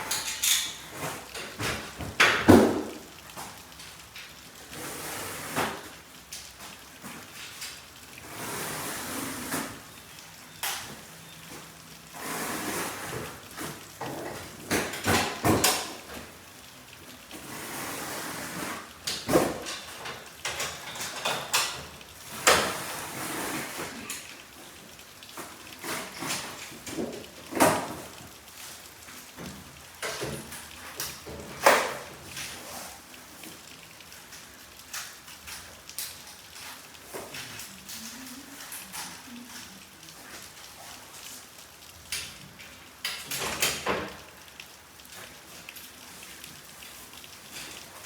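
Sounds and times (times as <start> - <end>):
knocks and clanks of hand tools: 0.0 - 3.6, 13.6 - 16.2
rubbing on garage door: 8.2 - 9.9, 12.1 - 13.9.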